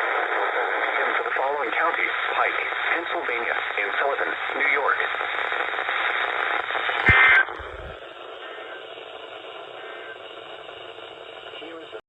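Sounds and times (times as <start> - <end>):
radio static hiss: 0.0 - 12.0
loud burst of tones: 5.6 - 11.9.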